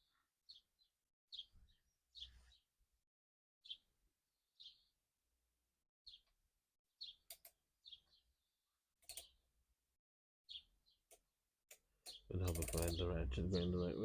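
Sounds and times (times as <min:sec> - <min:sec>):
faint bird chirps: 0:00.0 - 0:02.7.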